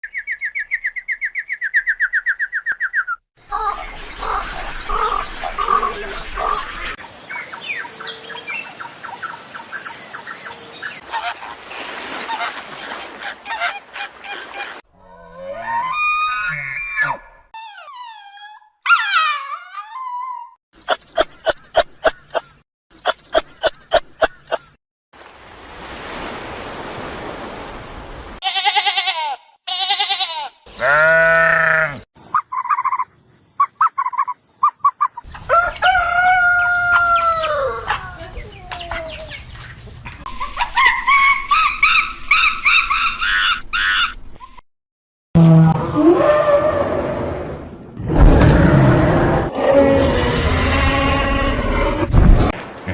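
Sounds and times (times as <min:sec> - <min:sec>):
hens clucking: 0:11.0 - 0:14.8, 0:32.4 - 0:41.8
rooster crowing: 0:35.4 - 0:38.0.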